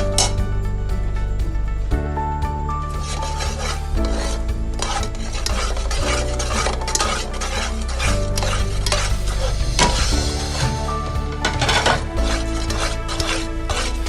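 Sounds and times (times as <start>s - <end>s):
background music: 0.0s - 14.0s
spoon scraping in a cooking pan: 2.9s - 14.0s.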